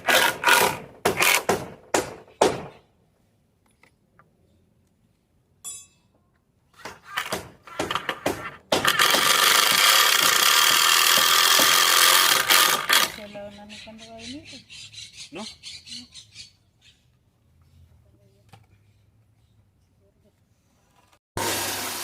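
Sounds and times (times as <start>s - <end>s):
tool scraping wood: 6.8s - 13.3s.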